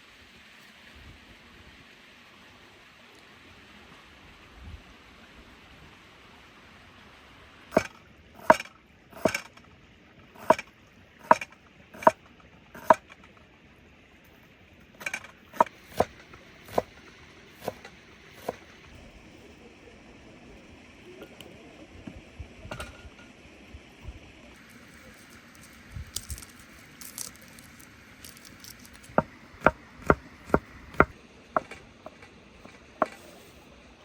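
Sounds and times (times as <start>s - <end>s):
wood being chopped: 7.7s - 9.5s, 10.4s - 12.2s, 15.6s - 17.0s, 17.6s - 18.6s, 25.2s - 31.7s.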